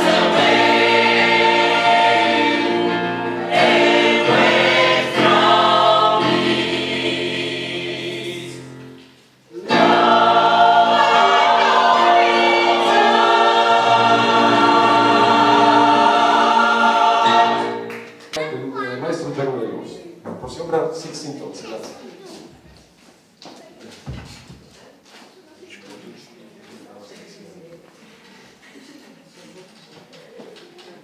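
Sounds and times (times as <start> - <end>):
gospel choir singing: 0.0 - 18.3.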